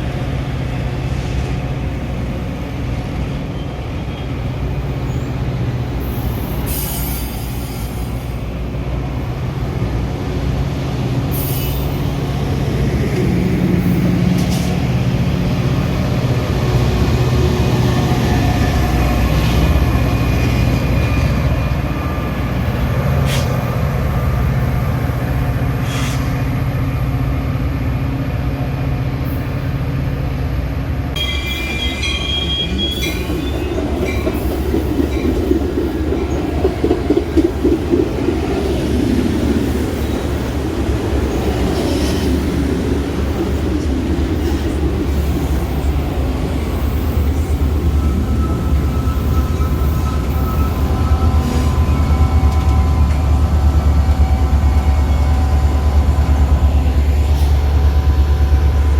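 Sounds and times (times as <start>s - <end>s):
train rumbling: 0.0s - 58.9s.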